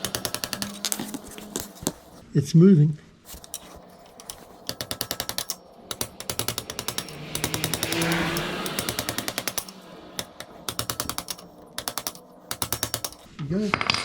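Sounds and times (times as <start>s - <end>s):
ratchet wrench clicking: 4.2s - 13.3s.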